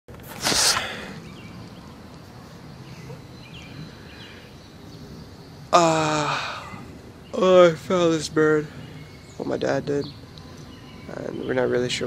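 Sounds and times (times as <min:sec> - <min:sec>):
loud rustling burst: 0:00.1 - 0:01.3
faint bird chirps: 0:00.9 - 0:12.0.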